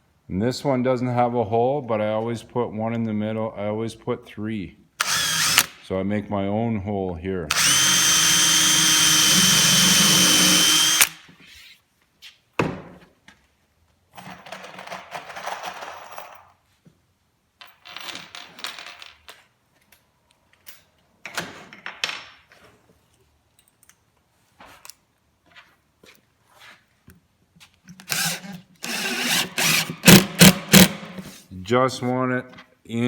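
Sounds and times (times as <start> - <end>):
power drill running: 5.0 - 5.8, 7.5 - 11.2, 28.1 - 31.1.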